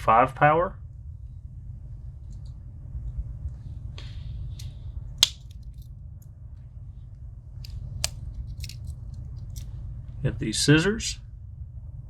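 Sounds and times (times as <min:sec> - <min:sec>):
pocket knife clicking: 0:04.6 - 0:05.8, 0:07.6 - 0:09.7
knife tool snapping shut: 0:05.2 - 0:05.8, 0:07.6 - 0:09.7.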